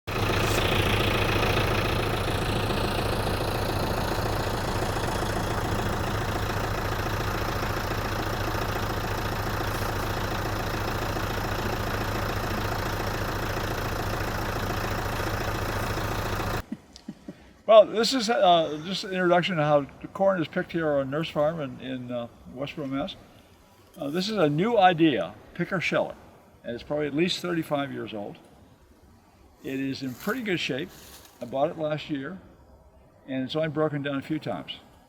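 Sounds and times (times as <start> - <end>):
tractor engine running: 0.0 - 16.7.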